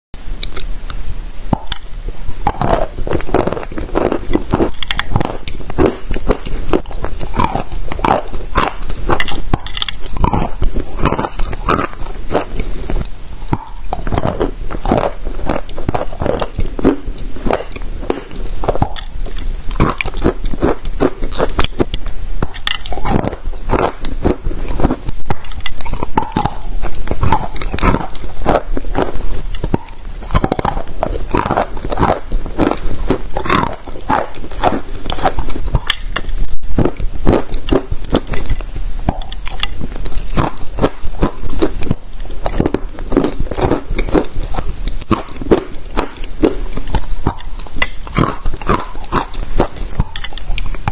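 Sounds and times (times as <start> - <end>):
chalk being chewed crunching: 1.5 - 50.9.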